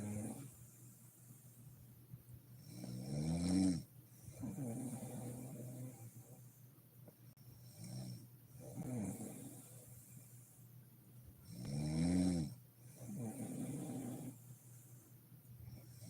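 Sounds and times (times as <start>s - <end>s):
soft breathing: 0.0s - 3.0s, 4.0s - 11.5s, 12.8s - 16.0s
woman snoring: 2.6s - 6.0s, 11.5s - 14.4s.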